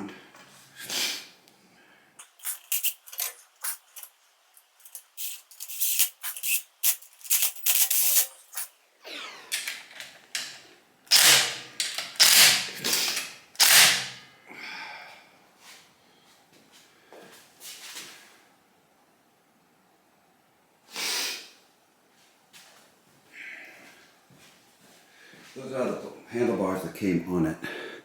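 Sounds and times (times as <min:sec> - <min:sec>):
ratchet wrench clicking: 0:04.8 - 0:08.7, 0:11.1 - 0:14.1.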